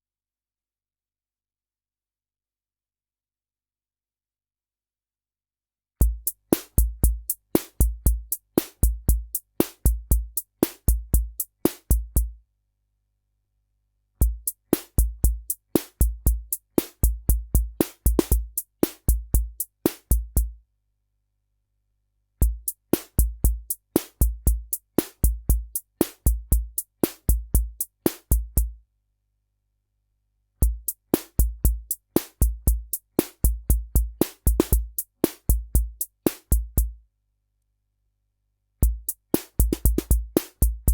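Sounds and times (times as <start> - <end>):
bass drum thumps: 6.0 - 12.3, 14.2 - 20.5, 38.8 - 40.9
clicky hi-hat and snare hits: 6.0 - 12.3, 14.2 - 20.5, 22.4 - 28.7, 30.6 - 36.9, 38.8 - 40.9
drum machine rock rhythm: 6.0 - 12.3, 14.2 - 20.5, 22.4 - 28.7, 30.6 - 36.9, 38.8 - 40.9.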